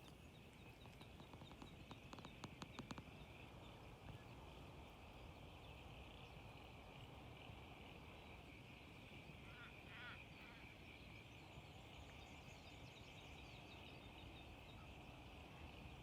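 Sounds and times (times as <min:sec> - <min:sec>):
small clicks: 0:00.0 - 0:03.2.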